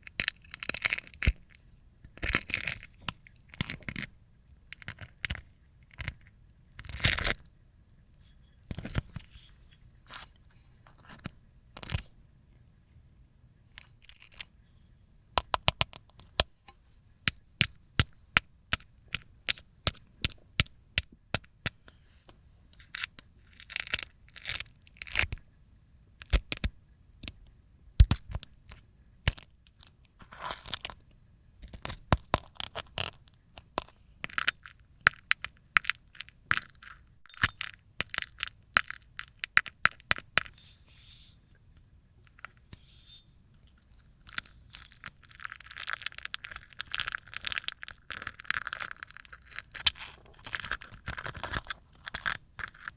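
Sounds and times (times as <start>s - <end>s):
dried slime cracking and snapping: 44.3s - 52.9s.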